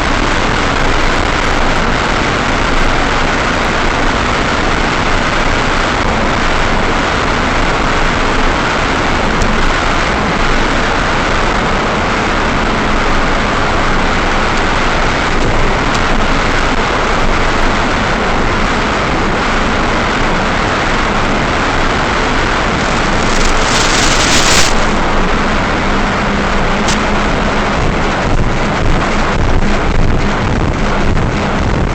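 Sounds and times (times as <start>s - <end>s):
faint steady hum: 0.0s - 31.9s
rushing wind noise: 0.0s - 31.9s
short hiss: 22.9s - 25.0s.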